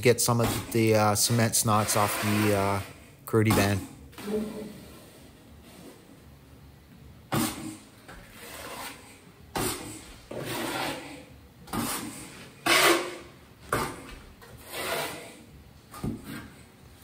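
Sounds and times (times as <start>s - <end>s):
trowel scraping membrane: 0.3s - 3.0s, 7.4s - 15.4s.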